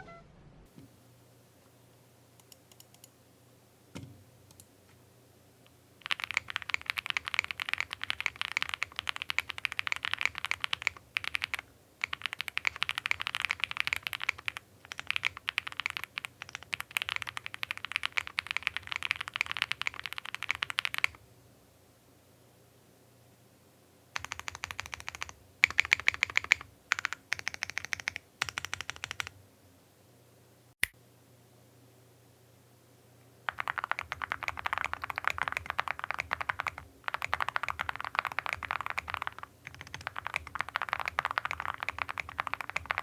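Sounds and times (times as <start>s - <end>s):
fast typing on mechanical keyboard: 6.0s - 21.2s, 24.2s - 29.3s, 33.5s - 43.0s.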